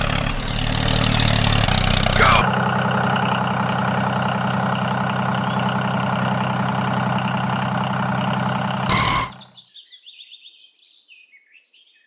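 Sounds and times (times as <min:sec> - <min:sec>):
small engine running: 0:00.0 - 0:09.6.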